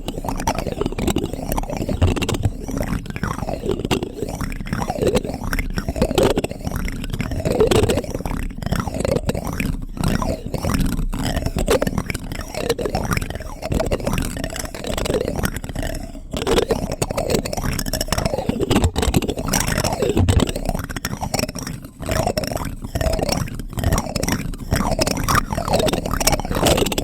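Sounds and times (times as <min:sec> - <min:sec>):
plastic spoon scraping and clicking: 0:00.0 - 0:08.2, 0:16.3 - 0:27.0.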